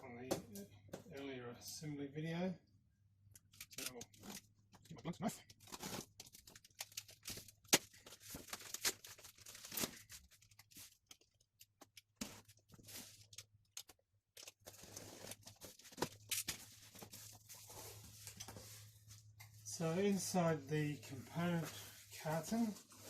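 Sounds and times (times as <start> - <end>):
packing tape tearing: 5.6 - 10.6, 14.4 - 17.0
cardboard scraping and crinkling: 14.6 - 19.2, 21.1 - 23.0.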